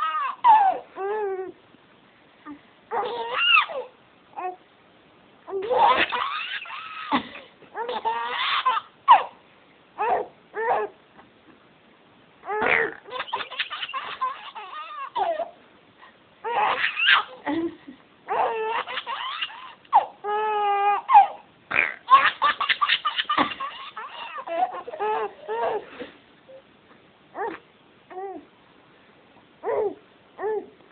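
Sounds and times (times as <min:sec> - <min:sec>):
baby laughing: 0:00.0 - 0:01.4, 0:02.9 - 0:03.9, 0:05.5 - 0:09.3, 0:12.5 - 0:15.6, 0:16.4 - 0:21.4, 0:22.0 - 0:26.0.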